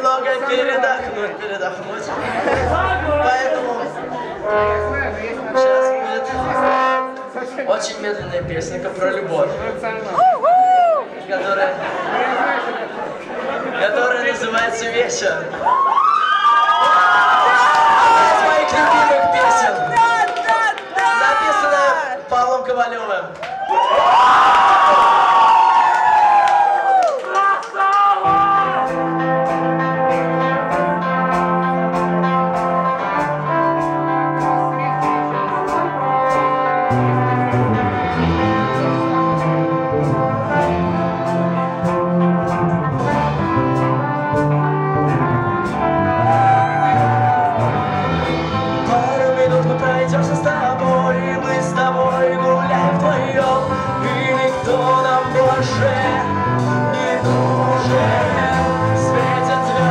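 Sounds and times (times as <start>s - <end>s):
rock band playing slow ballad: 2.2s - 3.6s, 4.2s - 7.3s, 28.2s - 59.9s.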